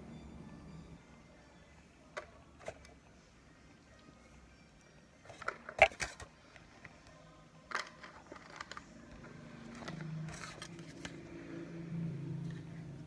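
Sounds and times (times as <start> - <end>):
objects clicking and knocking: 5.3 - 6.3, 7.7 - 11.2.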